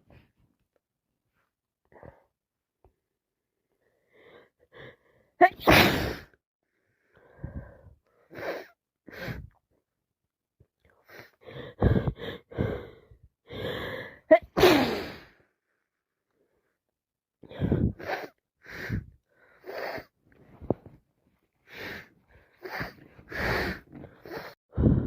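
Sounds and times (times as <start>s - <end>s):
girl sneezing: 5.4s - 6.3s, 14.3s - 15.2s.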